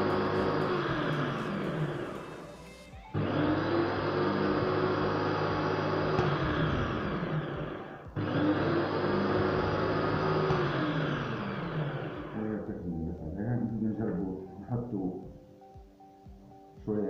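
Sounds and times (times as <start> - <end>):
blender motor whirring: 0.0 - 12.7.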